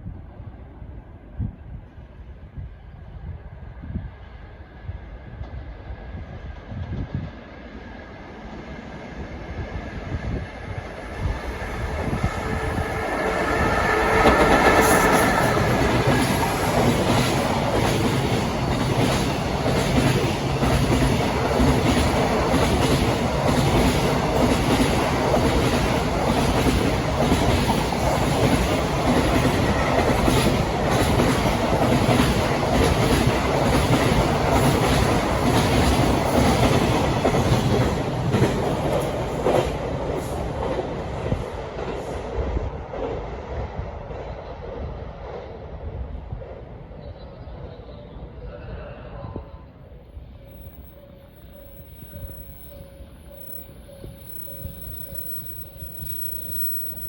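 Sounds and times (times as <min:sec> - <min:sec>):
freight train wheels clacking: 0:10.7 - 0:42.2.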